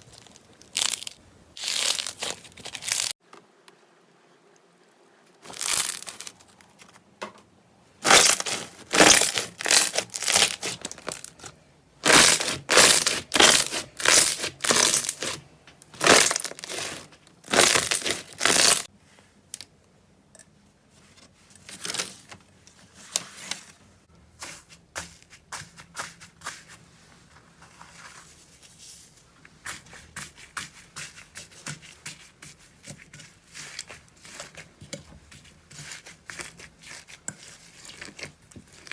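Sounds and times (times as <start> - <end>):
slime crunching and crackling: 0.0 - 3.2, 5.4 - 6.8, 8.0 - 18.9, 33.5 - 38.9.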